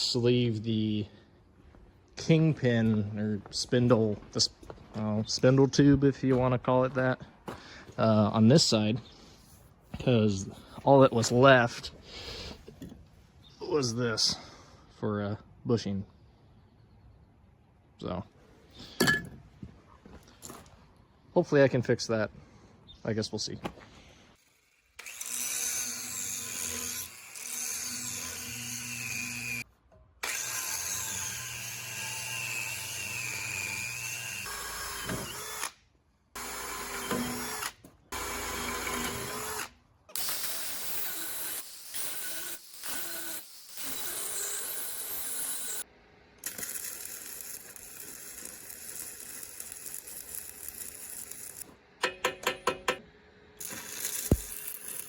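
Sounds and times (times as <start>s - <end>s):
power tool motor whining: 25.0s - 29.6s, 30.2s - 35.8s, 36.4s - 45.8s, 53.6s - 55.0s.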